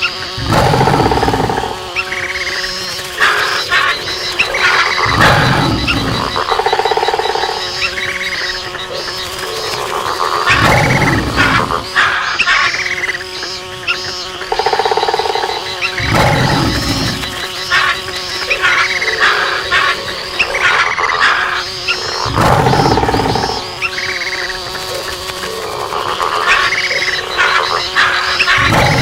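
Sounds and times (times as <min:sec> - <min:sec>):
arching animal calls: 0:00.0 - 0:29.0
frogs croaking and trilling: 0:00.0 - 0:29.0
insect drone: 0:00.0 - 0:29.0.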